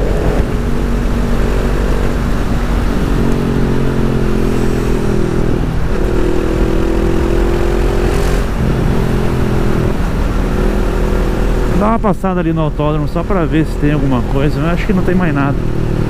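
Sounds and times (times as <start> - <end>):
wind rumble on microphone: 0.0 - 11.9.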